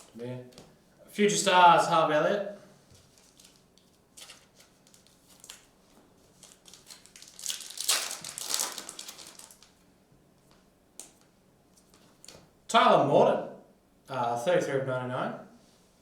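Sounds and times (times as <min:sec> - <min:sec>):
foil wrapper crinkling: 0:03.0 - 0:09.8.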